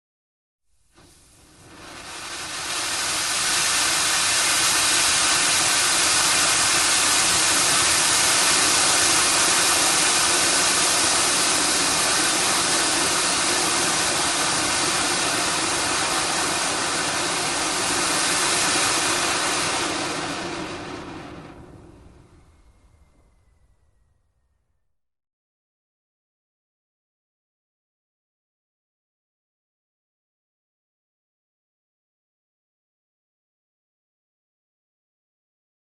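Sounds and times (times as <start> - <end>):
fountain firework hissing: 0.9 - 23.6.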